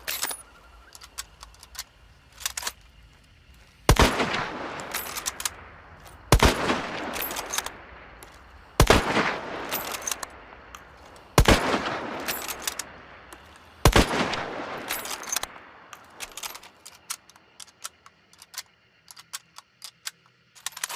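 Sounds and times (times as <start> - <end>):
sharp metallic clicks: 0.0 - 20.9
rifle shots echoing: 3.9 - 10.7, 11.3 - 16.6.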